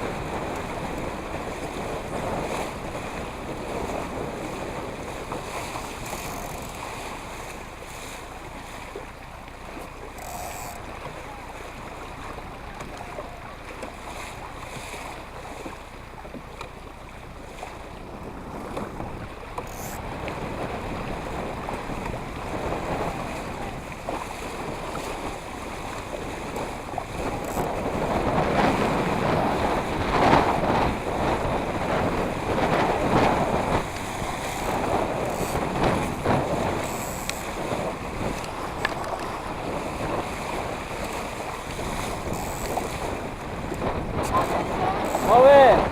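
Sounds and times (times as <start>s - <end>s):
wind buffeting microphone: 0.0s - 7.8s, 17.4s - 45.9s
water splashing against hull: 0.0s - 45.9s.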